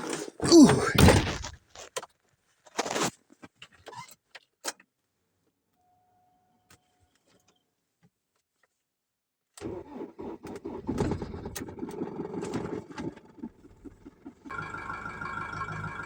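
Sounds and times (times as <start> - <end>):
tractor engine starting rough: 9.6 - 16.0.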